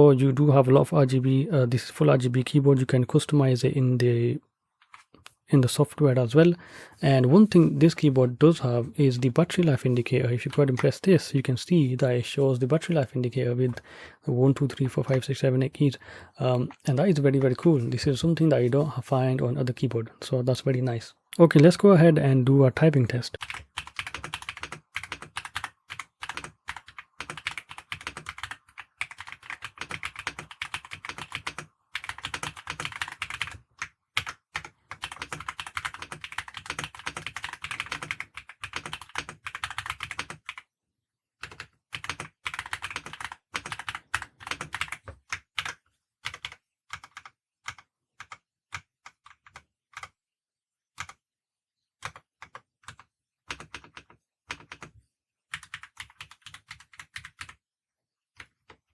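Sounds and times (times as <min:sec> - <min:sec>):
mechanical keyboard typing: 0:23.4 - 0:40.6, 0:41.4 - 0:50.1, 0:51.0 - 0:51.2, 0:52.0 - 0:54.9, 0:55.5 - 0:57.6.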